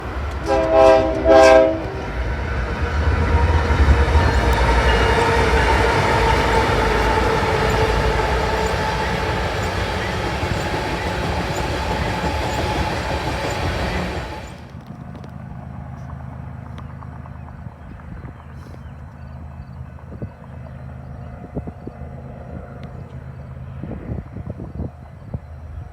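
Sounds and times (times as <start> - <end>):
locomotive horn blasts: 0.0 - 12.7
train engine rumble: 0.0 - 25.9
train wheel noise: 0.0 - 25.9.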